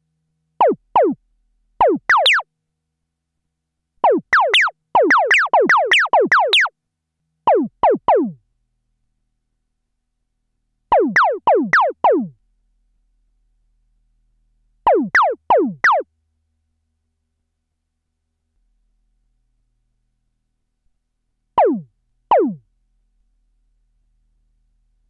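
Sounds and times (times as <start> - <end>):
synthesizer zapping notes: 0.6 - 1.2, 1.8 - 2.4, 4.0 - 6.7, 10.9 - 12.3, 14.9 - 16.0, 21.6 - 22.6.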